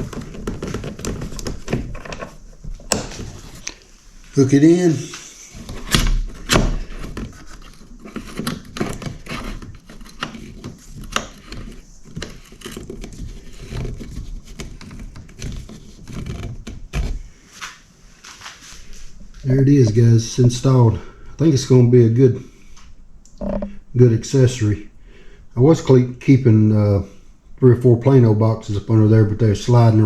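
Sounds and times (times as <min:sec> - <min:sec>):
rustling: 0:00.0 - 0:26.0
hook clicks and knocks: 0:23.3 - 0:23.8.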